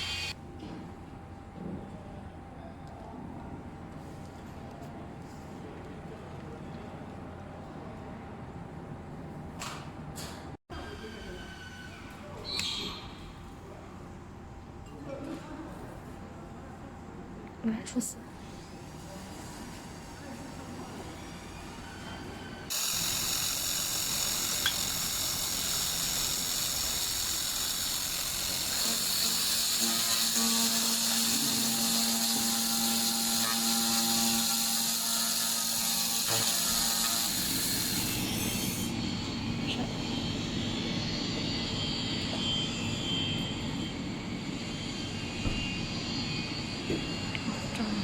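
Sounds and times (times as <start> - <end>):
laser machine high hiss: 0.0 - 0.4, 22.7 - 39.0.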